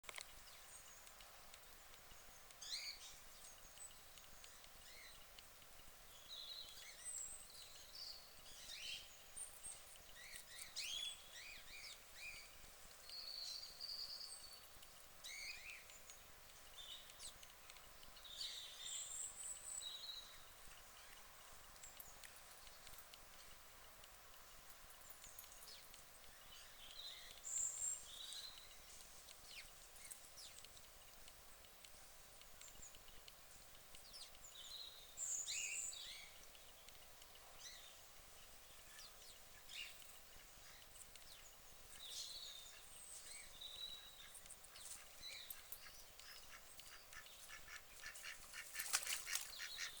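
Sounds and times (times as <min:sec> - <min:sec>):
ducks calling: 0:44.2 - 0:50.0.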